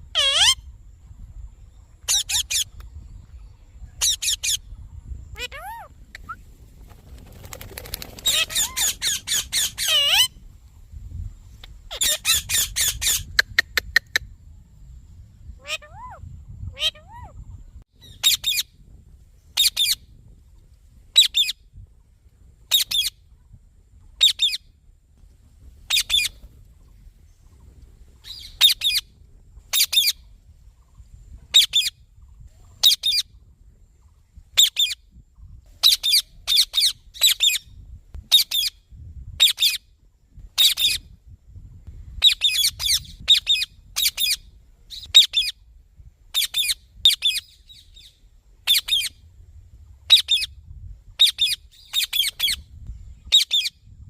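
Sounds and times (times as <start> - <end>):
parakeet squawking: 0.2 - 0.6, 5.4 - 5.9, 8.3 - 10.3, 15.6 - 17.3.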